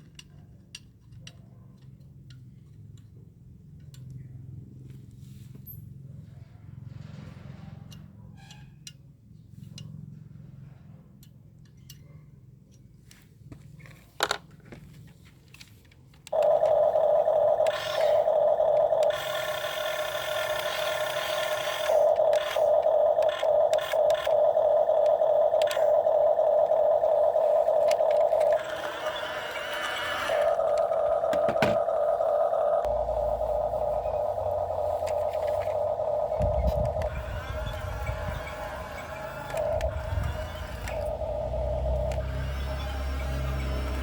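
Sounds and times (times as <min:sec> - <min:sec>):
low mechanical hum: 0:13.0 - 0:44.0
scattered clicks: 0:15.5 - 0:44.0
loud steady whine: 0:16.3 - 0:44.0.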